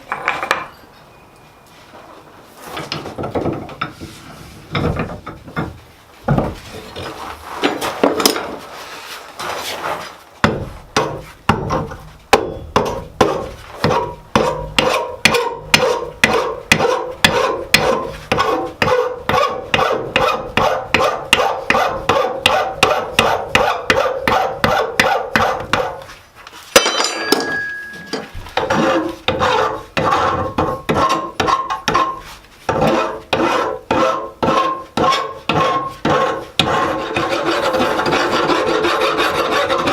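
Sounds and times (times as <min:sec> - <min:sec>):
hammer striking steel on anvil: 0:12.3 - 0:18.0, 0:26.8 - 0:28.3.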